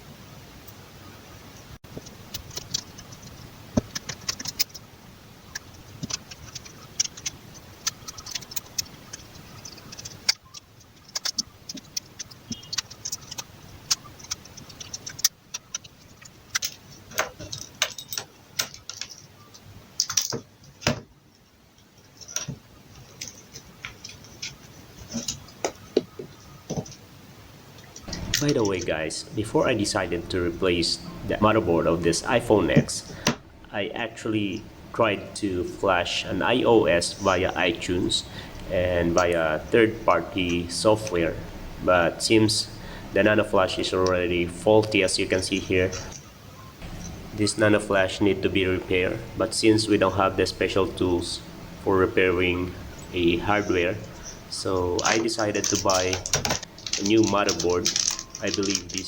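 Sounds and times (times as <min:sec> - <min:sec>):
small metal tools clicking: 0:05.5 - 0:20.8, 0:53.0 - 0:59.0.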